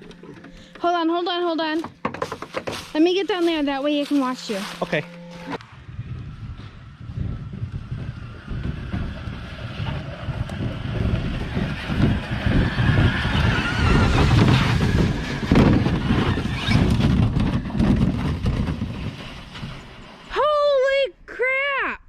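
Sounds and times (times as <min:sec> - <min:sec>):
boat hull scraping over dirt: 0:00.0 - 0:05.6, 0:08.0 - 0:20.8
wind buffeting microphone: 0:05.6 - 0:20.2.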